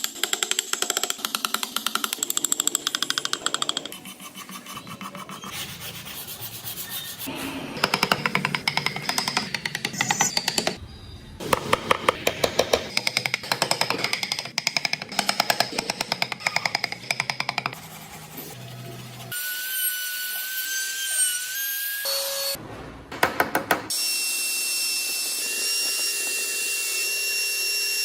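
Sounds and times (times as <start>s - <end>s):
wood being sanded: 3.5s - 7.4s, 17.8s - 20.8s.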